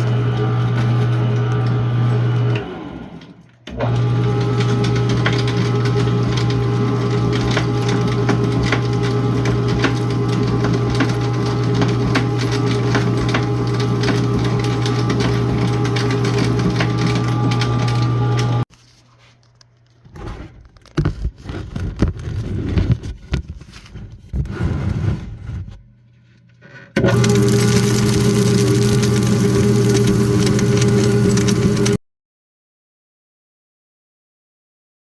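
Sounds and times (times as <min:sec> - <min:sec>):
shredder motor humming: 0:00.0 - 0:18.7, 0:27.0 - 0:32.0
plastic bits crackling: 0:27.0 - 0:32.0.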